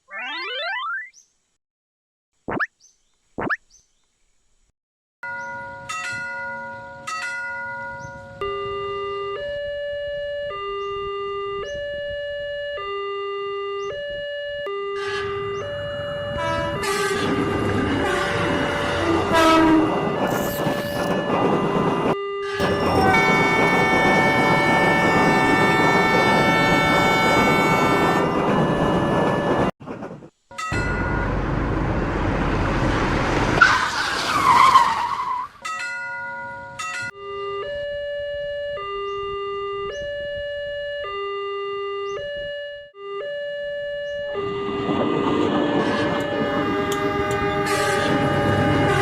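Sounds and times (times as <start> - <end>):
train horn blast: 14.7 - 20.6, 22.2 - 29.0, 44.4 - 49.0
train running: 15.0 - 34.9, 44.4 - 49.0
two-tone crossing signal chime: 17.6 - 25.6.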